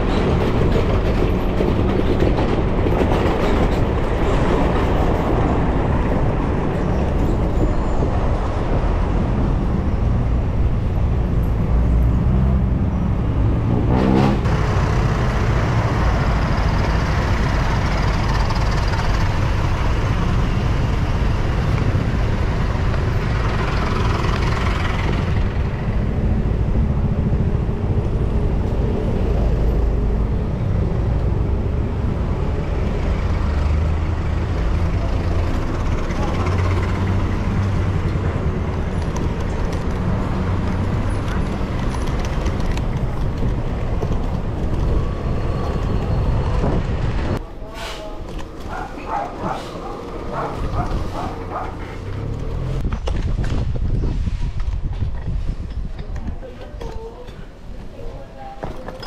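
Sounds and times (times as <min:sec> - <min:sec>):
road noise: 0:00.0 - 0:59.0
wind rushing: 0:39.9 - 0:47.4, 0:48.2 - 0:56.5.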